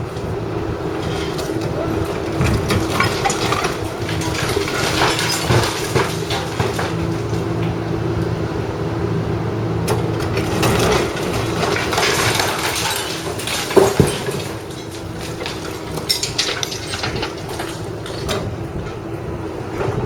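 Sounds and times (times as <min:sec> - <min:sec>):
heavy machine running: 0:00.0 - 0:20.0
concrete and debris crunching: 0:00.2 - 0:07.8, 0:09.9 - 0:18.9
sharp loud knocks: 0:02.3 - 0:03.8.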